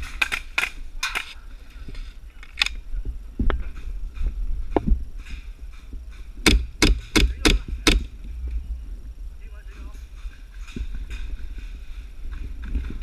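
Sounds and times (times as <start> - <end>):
steady rumbling: 0.0 - 13.0
airsoft gun shots: 6.4 - 8.1.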